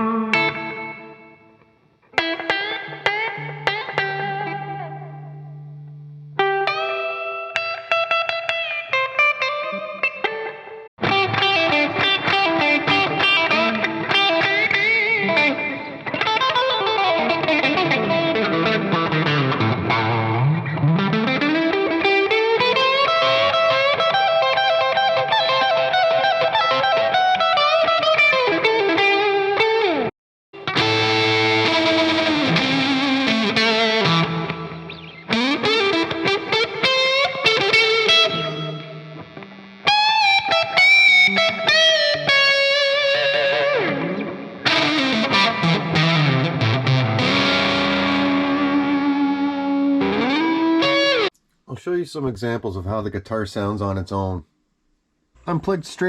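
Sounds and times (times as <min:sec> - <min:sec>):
distorted electric guitar: 0:00.0 - 0:51.3.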